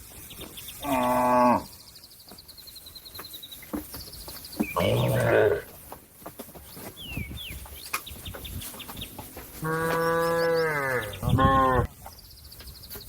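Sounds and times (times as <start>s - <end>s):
small birds chirping: 0.0s - 13.0s
cow mooing: 9.6s - 11.9s.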